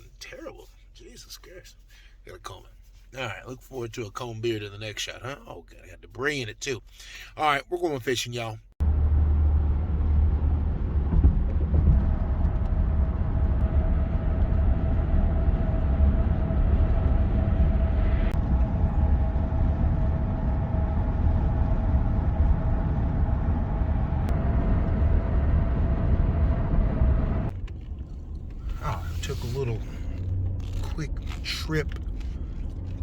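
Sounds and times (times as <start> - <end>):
car road noise: 8.8 - 33.0.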